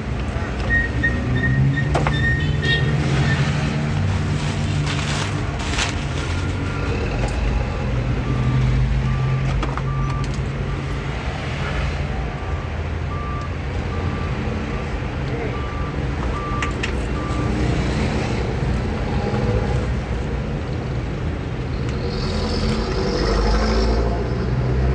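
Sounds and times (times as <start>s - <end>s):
reversing alarm beeping: 6.4s - 10.8s, 13.1s - 18.0s.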